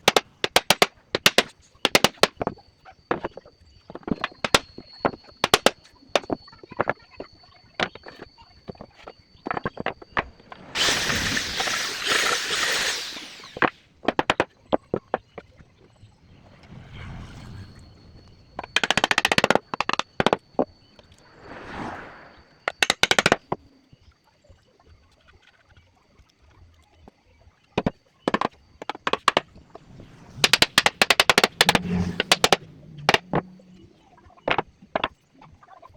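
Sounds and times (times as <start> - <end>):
sharp wooden knocks and taps: 0.0 - 2.5, 4.0 - 6.4, 18.6 - 20.4, 22.7 - 23.4, 27.8 - 29.4, 30.4 - 33.4
woodworking power tool running: 9.5 - 14.4, 29.0 - 33.8.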